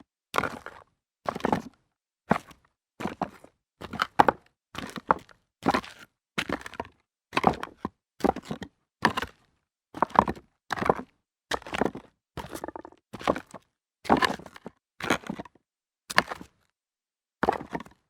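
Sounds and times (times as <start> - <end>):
footsteps on rocks: 12.5 - 13.0.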